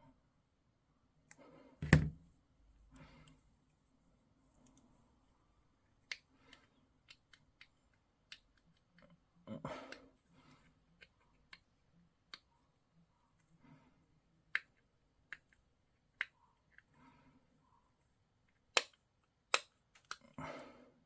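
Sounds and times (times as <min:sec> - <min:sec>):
heavy knocks on tabletop: 0:01.8 - 0:02.2
sharp clicks of plastic parts: 0:06.0 - 0:09.2, 0:18.5 - 0:20.4.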